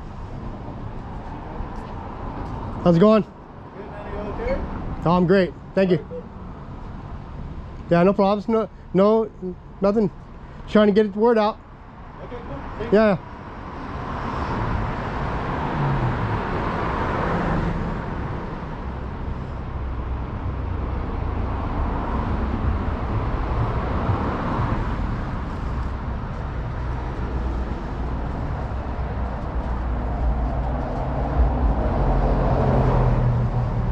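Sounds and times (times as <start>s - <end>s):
road noise: 0.0s - 33.9s
low engine hum: 11.7s - 33.9s.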